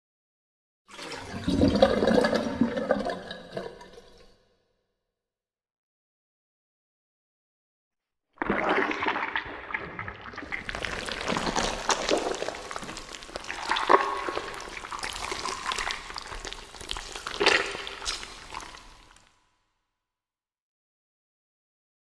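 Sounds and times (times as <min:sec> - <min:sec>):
wet gurgling sloshing: 0:00.9 - 0:04.2, 0:08.4 - 0:19.3
wet splats: 0:10.6 - 0:19.2.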